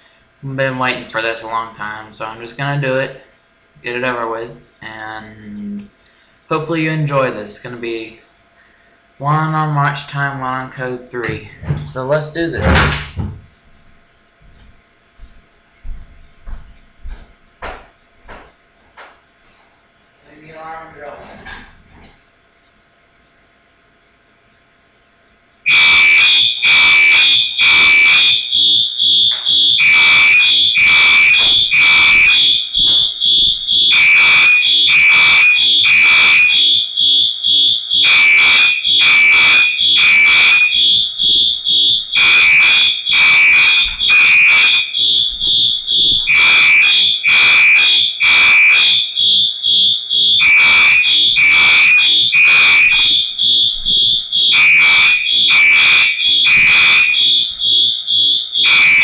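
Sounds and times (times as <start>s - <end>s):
fire alarm horn evacuation pattern: 25.6s - 59.0s
fire alarm horn pulsing rapidly: 25.6s - 59.0s.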